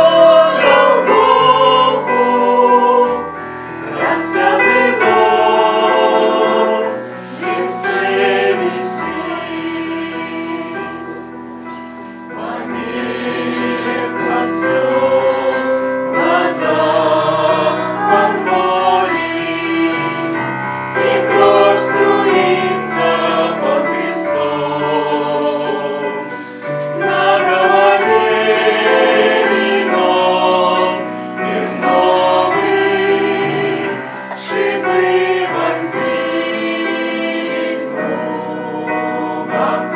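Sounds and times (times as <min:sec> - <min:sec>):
choir singing: 0:00.0 - 0:39.9.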